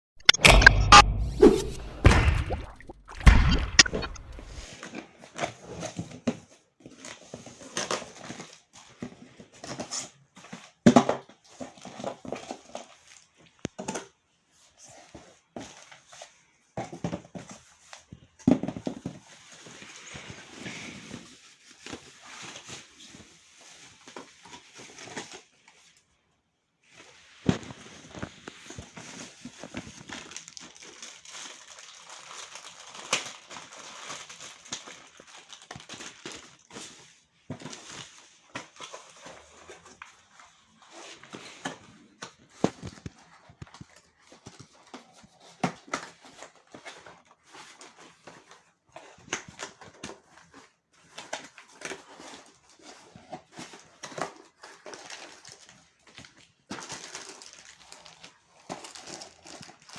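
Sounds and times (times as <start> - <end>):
knocks and clicks: 0.2 - 4.6
cardboard packaging rustling: 2.6 - 59.9.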